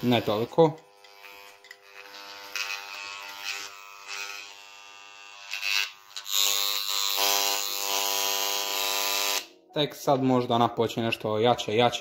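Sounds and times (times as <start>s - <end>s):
engraving pen buzzing: 0.0s - 9.5s.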